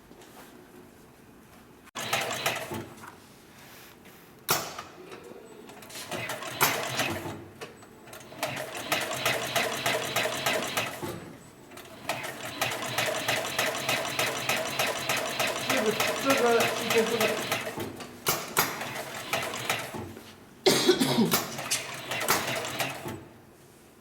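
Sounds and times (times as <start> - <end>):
sewing machine stitching: 2.0 - 2.8, 5.8 - 7.4, 8.1 - 11.1, 11.8 - 18.0, 18.6 - 20.1, 21.4 - 23.2.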